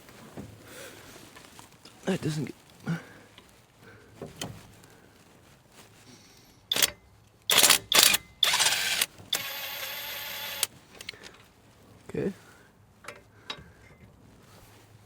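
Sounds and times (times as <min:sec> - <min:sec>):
impact wrench bursts: 0:06.7 - 0:06.9, 0:07.5 - 0:10.7.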